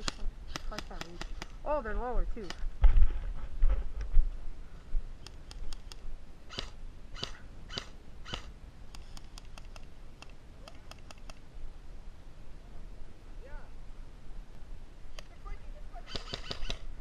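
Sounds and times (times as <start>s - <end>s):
airsoft guns firing: 16.0s - 16.9s.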